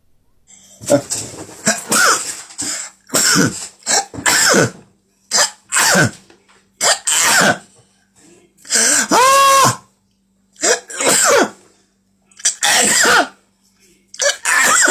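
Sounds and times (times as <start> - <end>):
person sneezing: 0.8 - 6.2, 6.8 - 7.7, 8.7 - 9.9, 10.6 - 11.7, 12.4 - 13.4, 14.2 - 14.9.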